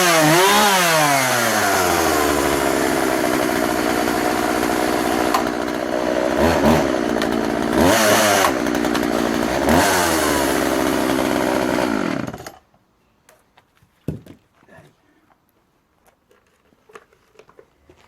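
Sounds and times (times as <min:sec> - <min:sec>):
chainsaw revving: 0:00.0 - 0:12.6.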